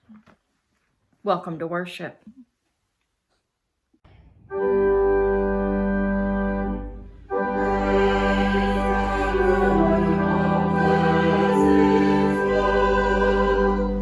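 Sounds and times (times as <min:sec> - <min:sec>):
organ playing sustained chords: 0:04.4 - 0:14.0.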